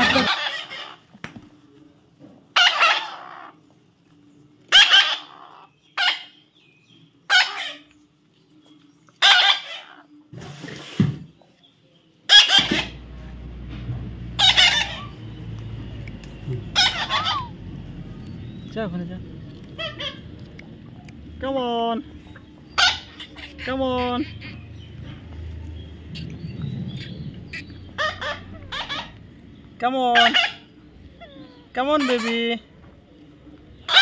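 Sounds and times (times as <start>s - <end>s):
parrot squawking: 0.0s - 1.1s, 2.6s - 3.6s, 4.7s - 6.4s, 7.3s - 7.9s, 9.2s - 10.1s, 12.3s - 13.2s, 14.3s - 18.6s, 19.5s - 21.2s, 22.2s - 29.4s, 30.0s - 32.7s
low steady hum: 12.6s - 34.0s.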